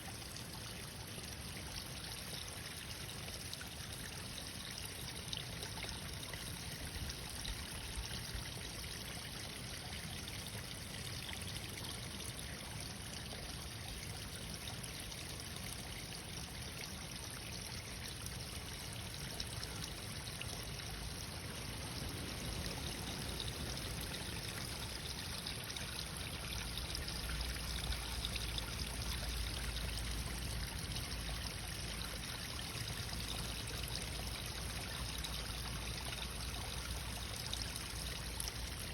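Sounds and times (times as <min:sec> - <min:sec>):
running water: 0:00.0 - 0:38.9.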